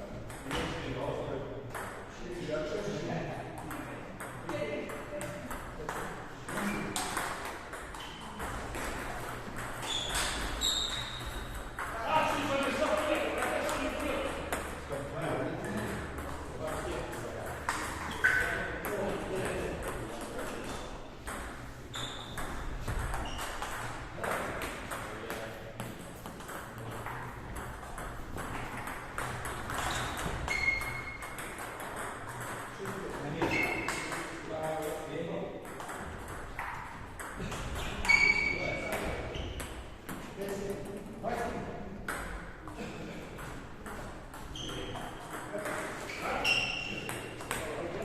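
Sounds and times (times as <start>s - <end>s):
table tennis balls clicking: 3.6s - 12.0s, 15.6s - 25.1s, 25.7s - 33.2s, 35.6s - 38.2s
high-pitched squeak: 9.8s - 11.3s, 29.8s - 31.2s, 38.0s - 38.8s, 46.1s - 47.0s.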